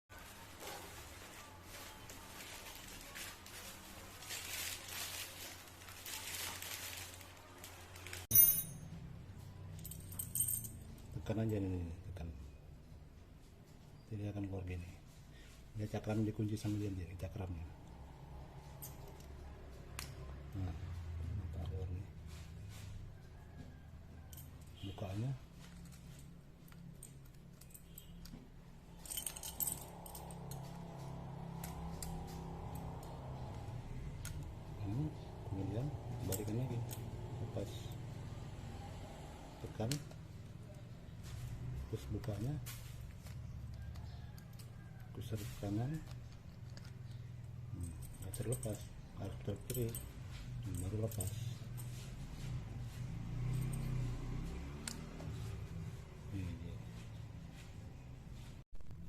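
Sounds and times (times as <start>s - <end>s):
sharp metallic clink: 8.3s - 9.0s
lock and keys clicking and rattling: 25.6s - 34.8s, 46.0s - 52.0s.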